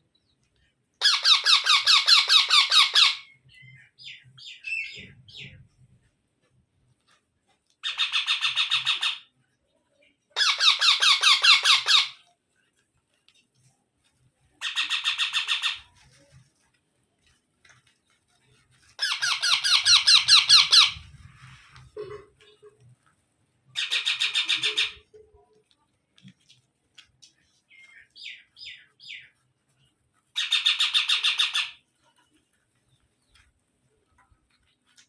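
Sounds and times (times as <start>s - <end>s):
parakeet calling: 1.0s - 3.4s, 10.4s - 12.2s, 19.0s - 21.0s.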